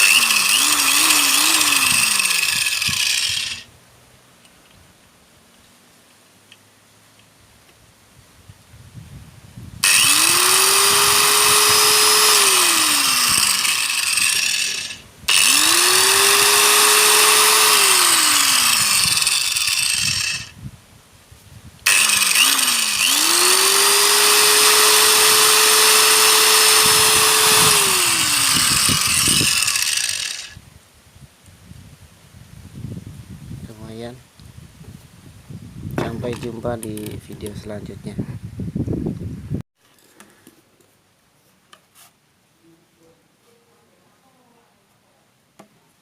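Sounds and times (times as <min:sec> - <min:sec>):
angle grinder motor whine: 0:00.0 - 0:03.7, 0:09.8 - 0:20.6, 0:21.9 - 0:30.6.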